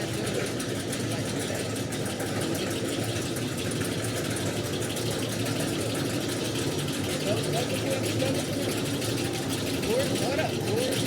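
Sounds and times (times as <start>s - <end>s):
engine rumble: 0.0s - 11.0s.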